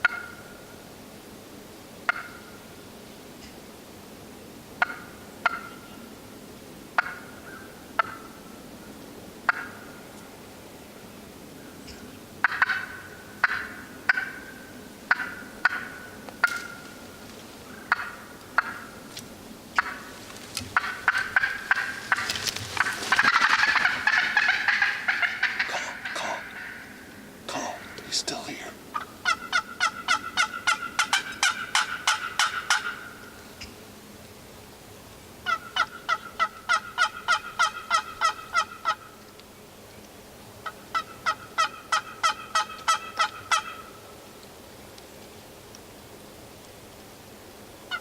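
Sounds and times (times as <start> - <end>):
wild turkey calling: 0.0 - 0.5, 2.1 - 2.5, 4.8 - 6.0, 7.0 - 8.4, 9.5 - 10.0, 11.6 - 17.0, 17.6 - 19.0, 19.8 - 33.8, 35.4 - 39.3, 40.6 - 44.1.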